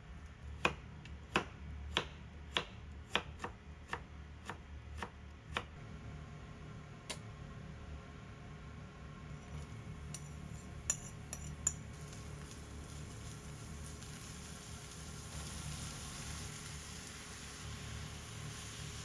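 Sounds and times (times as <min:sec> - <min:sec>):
kitchen utensils clinking: 0:09.4 - 0:12.6
food sizzling in a pan: 0:09.4 - 0:19.0.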